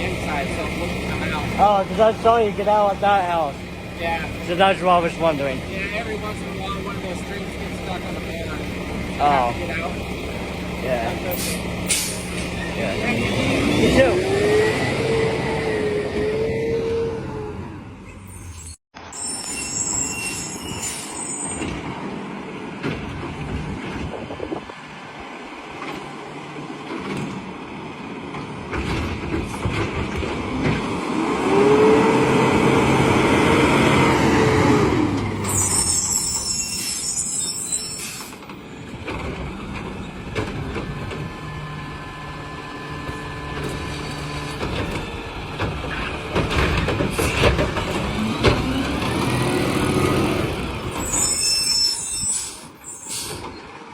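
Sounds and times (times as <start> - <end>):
garbage truck diesel engine revving: 0.0 - 18.0, 30.1 - 35.6, 39.4 - 51.0
air brakes hissing: 11.3 - 12.6, 19.4 - 21.6, 35.4 - 38.4, 51.0 - 53.6.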